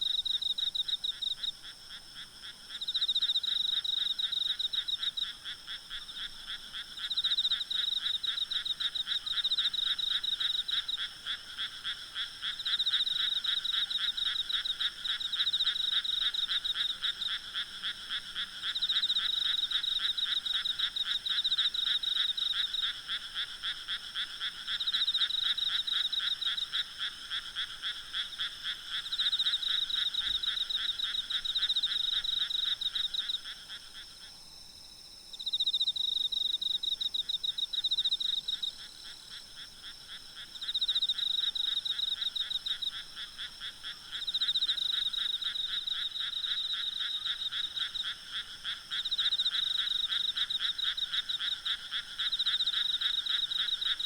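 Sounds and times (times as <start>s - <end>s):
frogs calling in pulsed trills: 0.0s - 54.0s
insects chirring: 24.2s - 54.0s.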